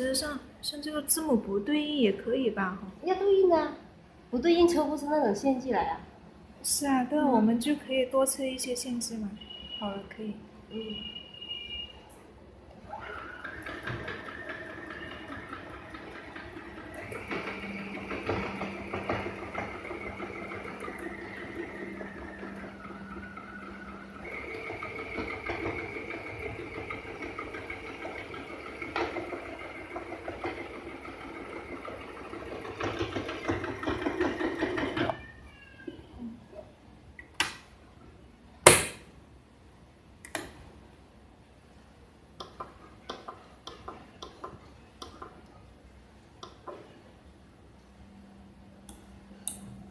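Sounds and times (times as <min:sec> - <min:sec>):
sewing machine stitching: 0:12.8 - 0:35.2.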